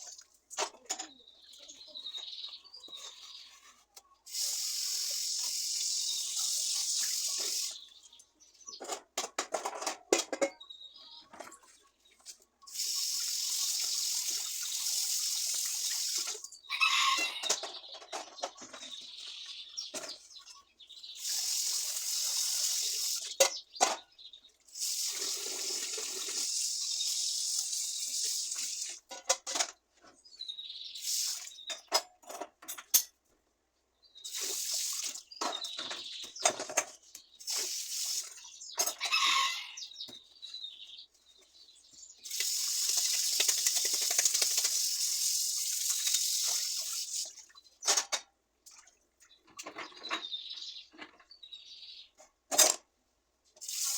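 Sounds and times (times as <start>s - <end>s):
water running: 4.3s - 7.8s, 12.7s - 16.5s, 21.2s - 23.4s, 24.7s - 29.1s, 34.3s - 35.3s, 37.4s - 38.5s, 42.2s - 47.5s
clicks and squeaks: 49.2s - 51.4s.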